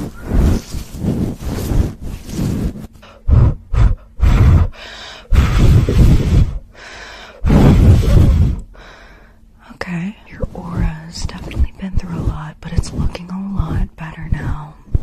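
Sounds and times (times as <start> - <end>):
scrubbing on microphone: 0.0 - 3.5, 5.4 - 6.6, 7.5 - 8.6, 10.4 - 15.0.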